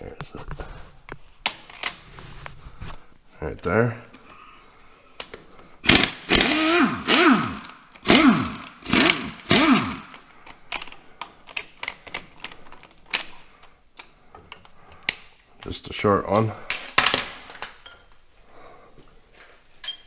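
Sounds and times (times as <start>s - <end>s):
impact wrench bursts: 5.8s - 10.2s
metallic clicks of tools and bolts: 10.1s - 15.4s, 19.8s - 20.0s.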